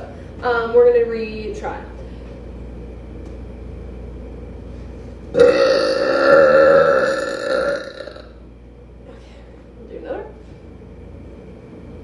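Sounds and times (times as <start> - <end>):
woman burping loudly: 5.4 - 8.3.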